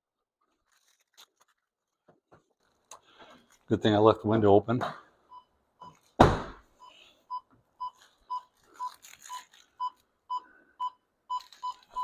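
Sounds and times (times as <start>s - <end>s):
loud thunk: 6.2s - 6.6s.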